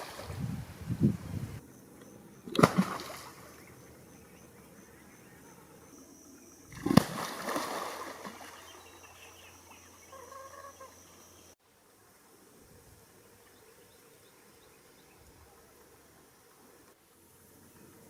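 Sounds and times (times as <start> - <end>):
water splashing: 0.0 - 0.5, 2.5 - 3.7, 6.7 - 8.9
alligator jaws slapping water: 2.5 - 3.6, 6.7 - 8.7.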